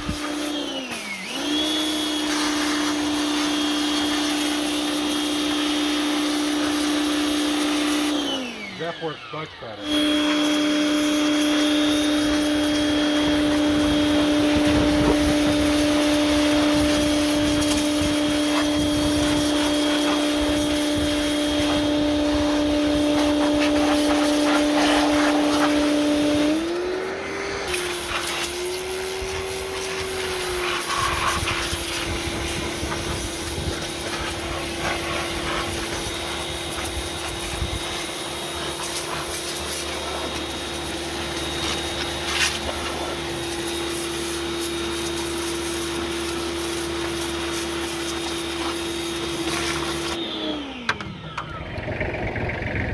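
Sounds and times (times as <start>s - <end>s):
pressure washer spray hissing: 0.0s - 50.2s
motor hum: 0.0s - 52.9s.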